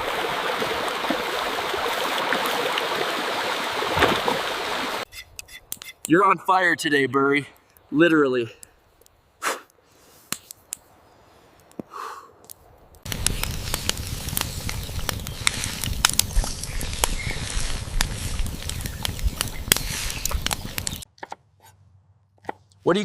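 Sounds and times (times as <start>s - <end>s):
wood fire crackling and popping: 12.4s - 21.1s.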